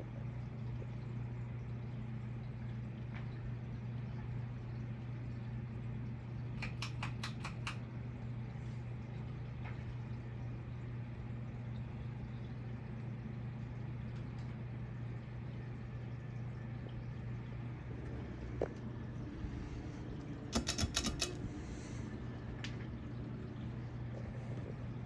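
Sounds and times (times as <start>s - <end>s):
ceiling fan motor hum: 0.0s - 25.0s
clicks: 20.5s - 21.4s.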